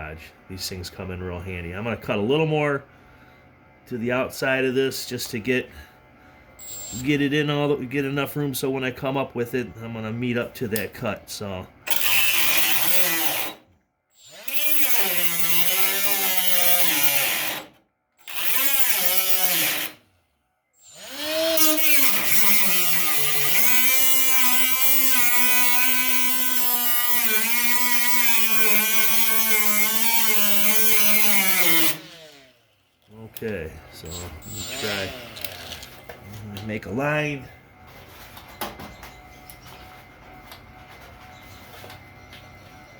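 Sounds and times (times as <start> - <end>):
cutoff tool cutting metal: 11.9 - 13.6, 14.3 - 20.0, 20.9 - 32.5, 34.2 - 35.9.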